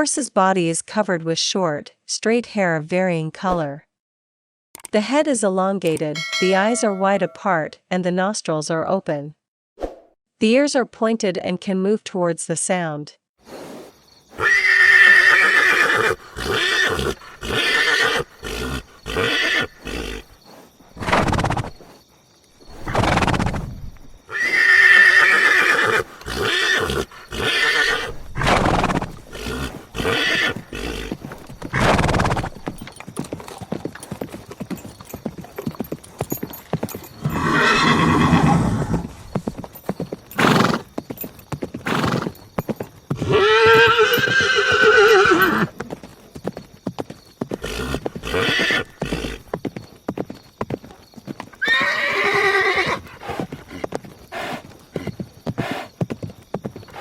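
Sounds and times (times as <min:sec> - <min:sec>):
horse snorts: 0:13.4 - 0:22.0, 0:22.7 - 0:32.8, 0:40.4 - 0:40.9, 0:41.8 - 0:42.3, 0:47.5 - 0:49.5, 0:51.7 - 0:56.0
horses neighing: 0:14.3 - 0:21.8, 0:22.7 - 0:46.0, 0:47.4 - 0:49.6, 0:51.4 - 0:56.0
hooves clip-clopping: 0:25.9 - 0:38.1, 0:38.8 - 0:57.0.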